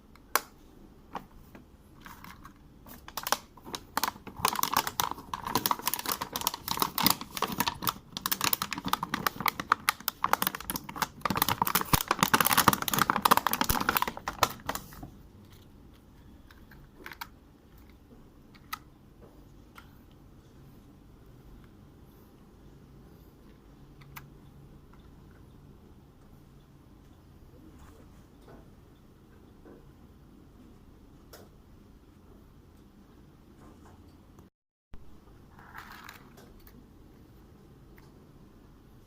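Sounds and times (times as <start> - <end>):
toy and packaging clicking: 2.0 - 15.7.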